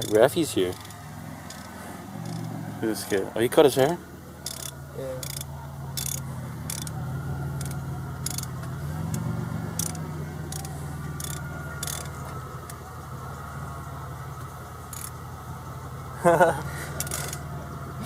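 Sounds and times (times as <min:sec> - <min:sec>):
sharp clicks: 0:00.0 - 0:03.2, 0:04.4 - 0:07.0, 0:07.6 - 0:12.8.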